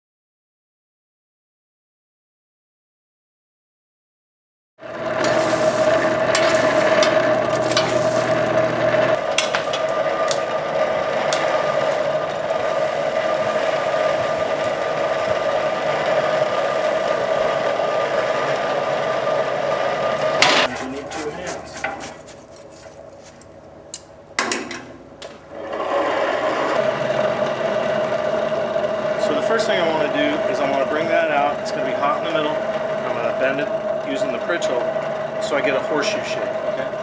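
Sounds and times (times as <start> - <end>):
forge blower roaring: 4.8 - 37.0
fire crackles: 4.9 - 24.4
constant whine: 4.9 - 25.6.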